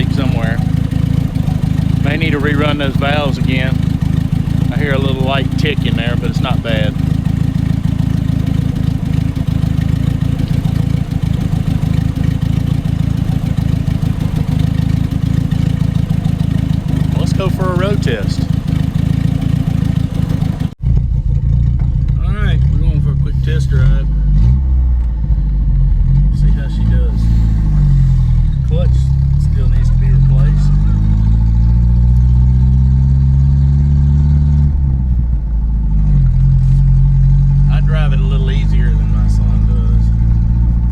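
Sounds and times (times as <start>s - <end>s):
car engine idling with tick: 0.0s - 31.0s, 32.0s - 32.3s, 34.7s - 40.9s.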